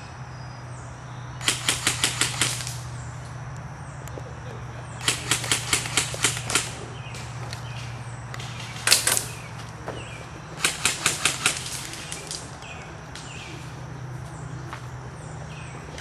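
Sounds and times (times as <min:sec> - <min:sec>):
steady low hum: 0:00.0 - 0:16.0
airsoft guns firing: 0:01.4 - 0:03.0, 0:05.0 - 0:13.5.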